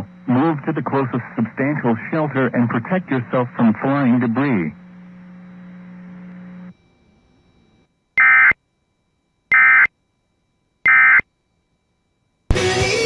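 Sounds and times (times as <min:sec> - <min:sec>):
low steady hum: 0:00.0 - 0:12.5
raspy digital data bursts: 0:08.2 - 0:08.6, 0:09.5 - 0:09.9, 0:10.9 - 0:11.3.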